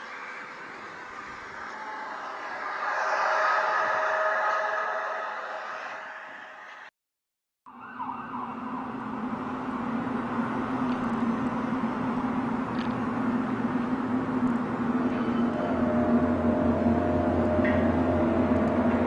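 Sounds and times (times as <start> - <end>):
rushing noise: 0.0 - 6.9, 8.8 - 19.0
low droning hum: 9.1 - 19.0.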